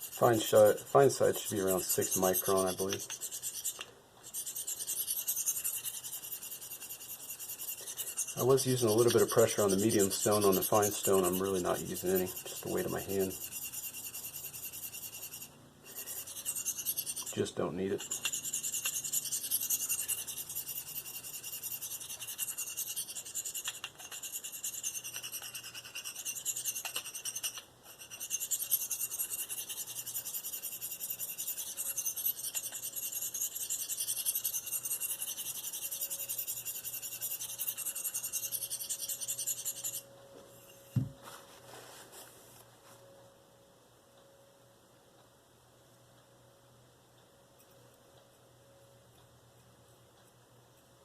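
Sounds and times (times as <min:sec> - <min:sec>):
knife scraping on sharpening stone: 0:00.0 - 0:41.1
soft knock: 0:41.0 - 0:41.2.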